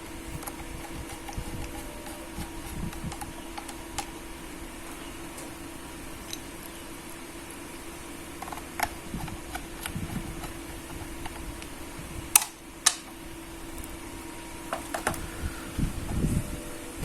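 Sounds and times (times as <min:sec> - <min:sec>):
steady low hum: 0:00.0 - 0:17.0
sharp clicks: 0:12.3 - 0:13.2.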